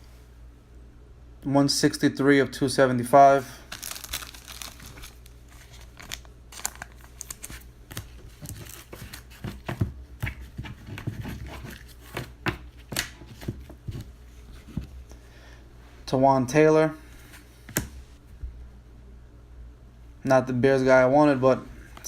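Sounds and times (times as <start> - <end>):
card pack wrapper tearing and crinkling: 3.7 - 9.4
cards being handled: 3.7 - 14.8.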